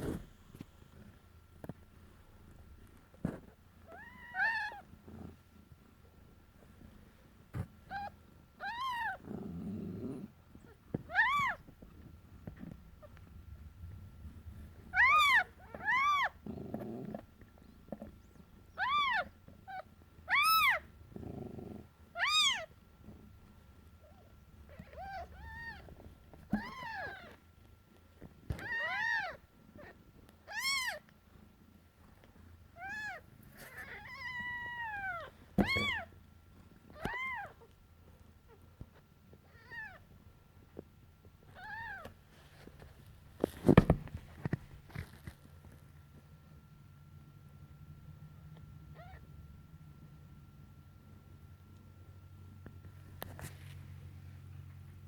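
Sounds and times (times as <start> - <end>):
kittens mewing: 20.3 - 20.9.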